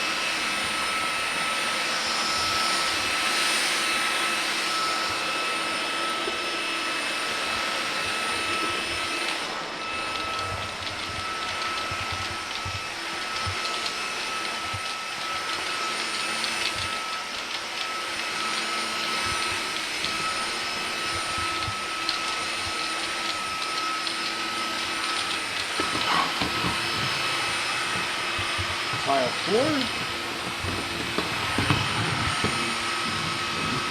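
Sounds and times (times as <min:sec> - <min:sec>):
stick vacuum whining: 0:00.0 - 0:33.9
brush head on carpet: 0:25.7 - 0:33.9.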